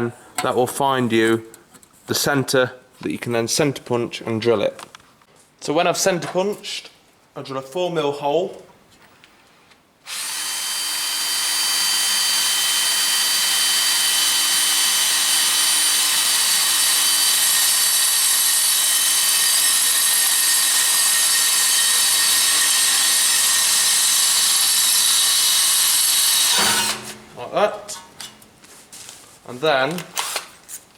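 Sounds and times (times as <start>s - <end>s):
power drill drilling sheet metal: 10.1s - 27.3s.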